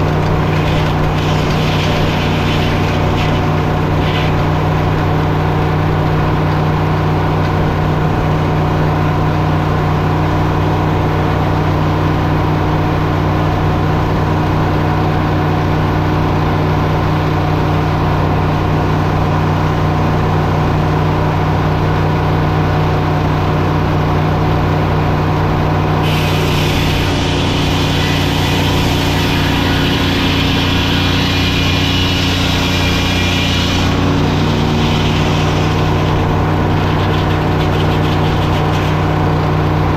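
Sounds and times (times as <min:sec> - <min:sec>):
saw hissing through log: 0:00.0 - 0:05.3, 0:26.0 - 0:39.3
sawmill engine running: 0:00.0 - 0:39.9.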